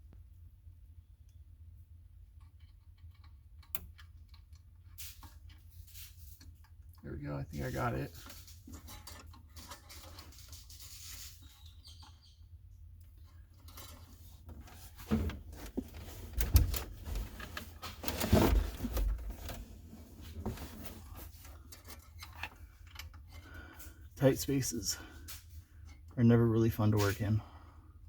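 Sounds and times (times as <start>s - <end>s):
rustling of body moving: 14.1s - 21.7s
knocks and clunks: 14.5s - 21.2s.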